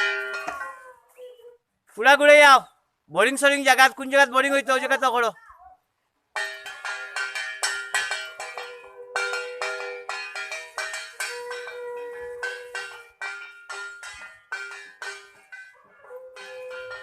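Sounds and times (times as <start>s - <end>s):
hand bell ringing: 0.0s - 0.9s, 6.4s - 17.0s.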